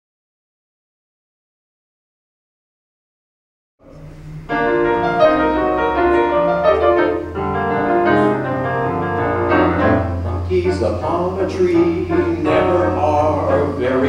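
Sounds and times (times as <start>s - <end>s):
grand piano playing: 3.8s - 14.0s.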